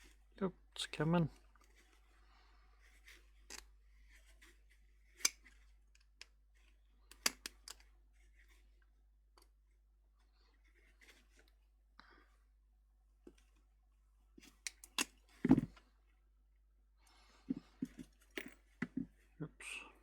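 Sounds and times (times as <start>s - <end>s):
hand tools clicking and snapping: 7.1s - 7.8s, 14.4s - 15.2s.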